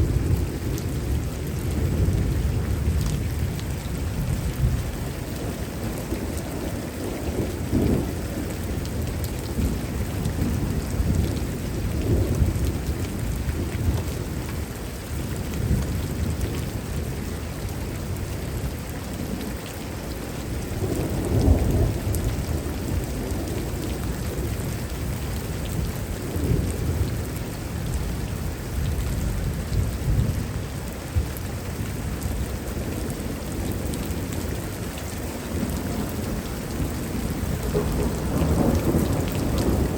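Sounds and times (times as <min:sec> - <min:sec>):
steady rain: 0:00.0 - 0:39.9
thunder rumbling: 0:32.4 - 0:39.9.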